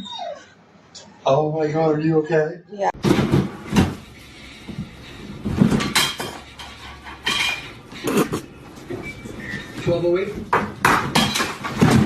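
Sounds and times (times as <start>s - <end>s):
clattering knocks: 9.7s - 12.0s.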